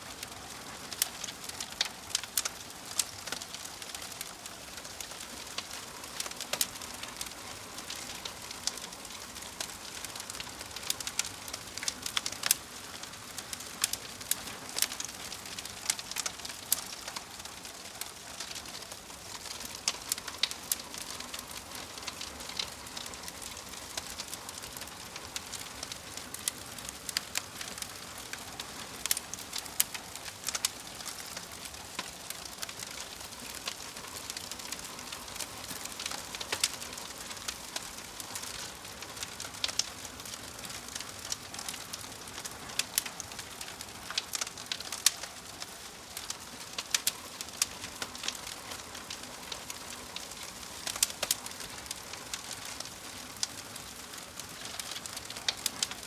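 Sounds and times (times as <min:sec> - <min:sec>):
burning logs crackling and popping: 0:00.0 - 0:56.0
hiss of flames: 0:29.0 - 0:56.0.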